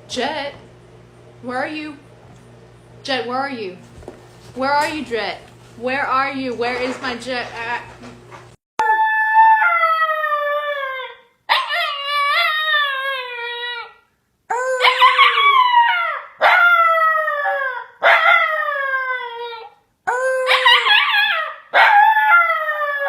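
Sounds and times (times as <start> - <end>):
dog howling: 8.8 - 23.0.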